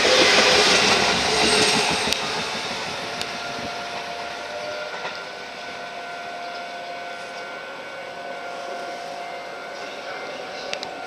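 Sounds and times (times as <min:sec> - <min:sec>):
level crossing alarm ringing: 0:00.0 - 0:11.0
train rail noise: 0:00.0 - 0:11.0.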